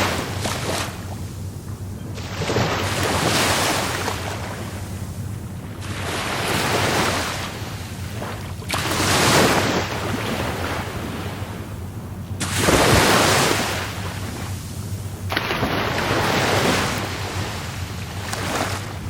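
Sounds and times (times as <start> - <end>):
rough surf waves breaking: 0.0 - 19.0.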